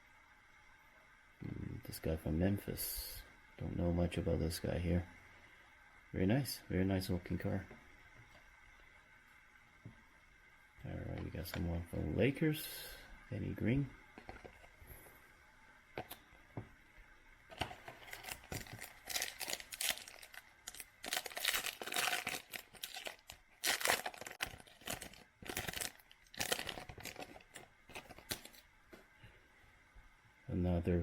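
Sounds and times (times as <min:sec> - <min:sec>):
foil wrapper and cards crinkling: 0:17.5 - 0:28.7.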